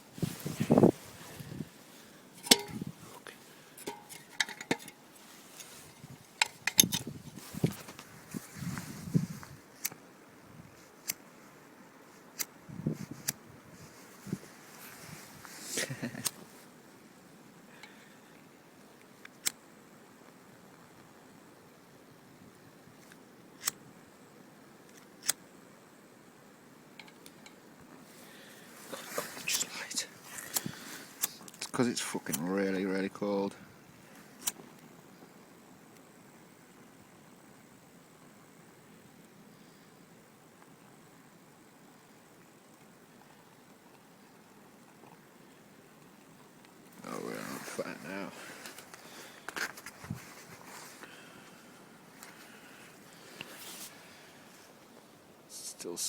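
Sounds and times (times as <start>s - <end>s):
metal stove parts clinking: 2.4s - 2.9s, 3.8s - 7.1s
person speaking: 29.0s - 30.5s, 31.6s - 33.6s, 47.0s - 48.6s, 55.5s - 56.0s.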